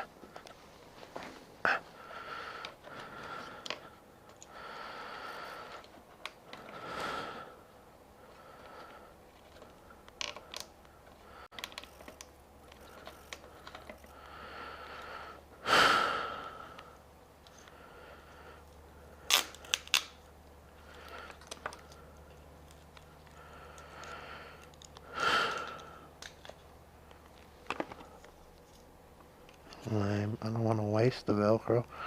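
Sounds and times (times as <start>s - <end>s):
small parts clicking and tapping: 21.0s - 29.9s.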